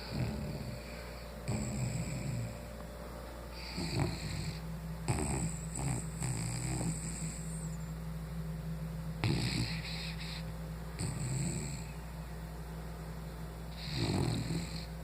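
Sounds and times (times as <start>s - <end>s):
dog snoring: 0.0s - 2.7s, 3.5s - 7.9s, 9.2s - 12.0s, 13.7s - 15.0s.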